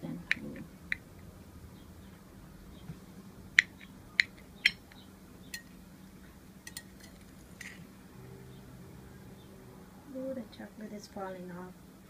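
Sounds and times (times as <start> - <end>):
utensil clinking against bowl: 6.7 - 7.8.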